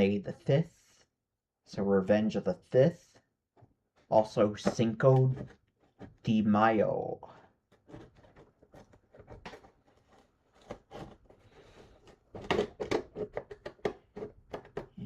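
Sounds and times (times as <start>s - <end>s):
package clicks taps and rustles: 10.5s - 15.0s.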